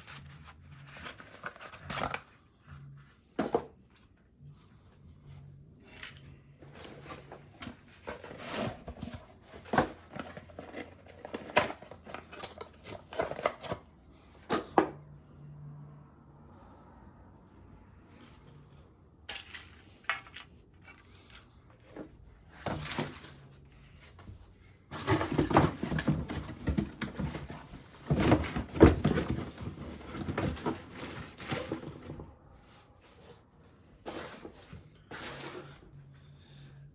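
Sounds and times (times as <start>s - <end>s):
objects being handled: 5.0s - 15.0s, 18.1s - 36.1s.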